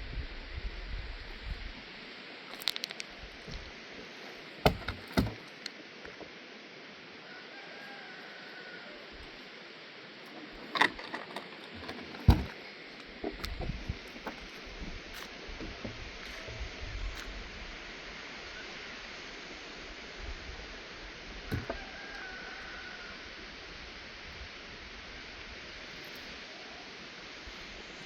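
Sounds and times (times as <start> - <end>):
steady hiss: 0.0 - 28.0
sharp knocks or cracks: 4.6 - 5.4, 11.8 - 12.6.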